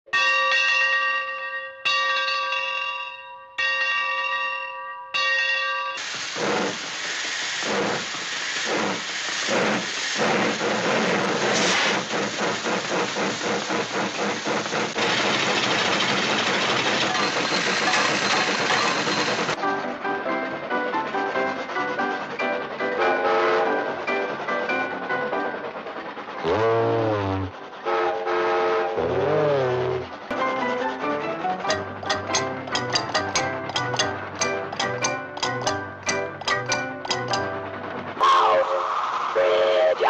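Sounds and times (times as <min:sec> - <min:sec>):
noisy rushing with clattering: 0:06.0 - 0:19.6
bell ringing: 0:17.0 - 0:19.6, 0:31.7 - 0:37.7.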